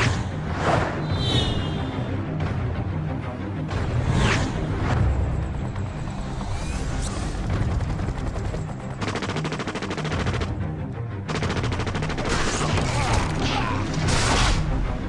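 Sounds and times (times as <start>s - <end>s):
low film score: 0.0s - 15.0s
automatic gunfire: 11.3s - 12.8s.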